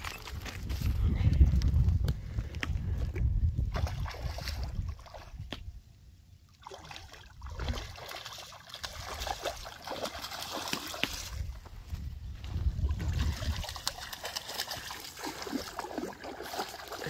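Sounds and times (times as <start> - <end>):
wind rumbling on microphone: 0.0 - 6.0, 11.0 - 16.0
water trickling and splashing: 3.7 - 5.6, 6.5 - 11.8, 12.4 - 17.0.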